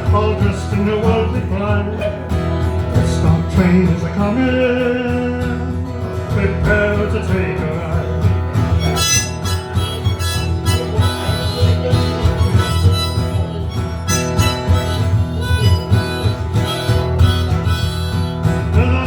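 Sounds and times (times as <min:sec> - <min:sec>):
strummed acoustic guitar: 0:00.0 - 0:19.0
harmonica playing: 0:08.0 - 0:19.0.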